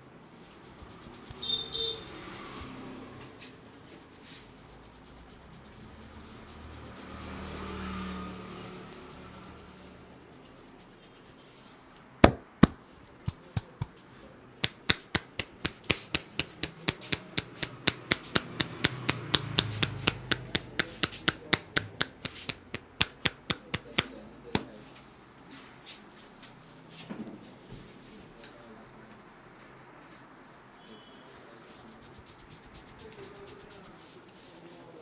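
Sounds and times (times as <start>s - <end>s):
hands slapping a head: 12.2s - 14.0s, 14.6s - 24.8s.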